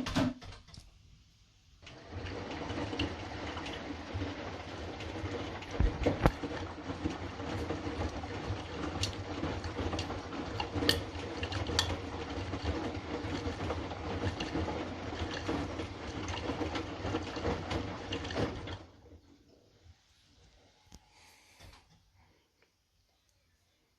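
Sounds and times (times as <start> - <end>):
washing machine clicks and knocks: 0.0 - 0.8, 1.9 - 19.0
washing machine drum churning: 0.0 - 0.8, 1.8 - 19.8.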